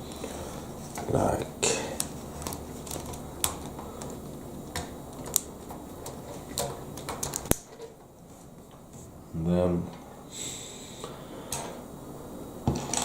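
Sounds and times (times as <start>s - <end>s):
plastic pieces clicking: 2.4s - 7.9s.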